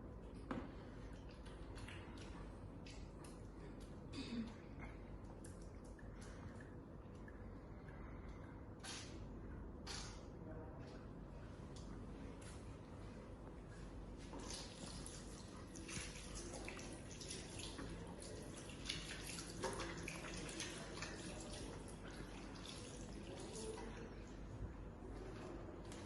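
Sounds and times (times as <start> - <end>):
small water drips: 0.1 - 9.2, 13.7 - 24.6
water trickling and splashing: 0.7 - 4.0, 14.2 - 24.5.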